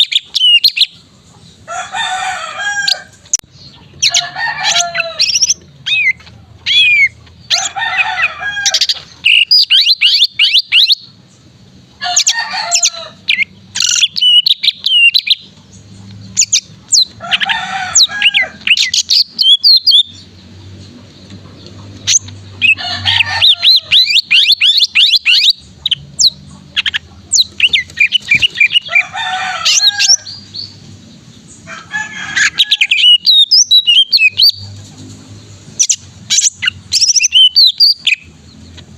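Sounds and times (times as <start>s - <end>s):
bird singing whistled notes: 0.0s - 1.0s, 9.3s - 11.1s, 13.3s - 15.5s, 23.9s - 26.4s, 32.9s - 34.6s, 35.8s - 38.3s.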